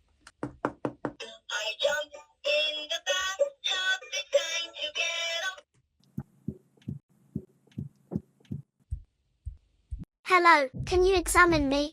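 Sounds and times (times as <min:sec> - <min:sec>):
low heartbeat thumps: 0:06.2 - 0:11.8.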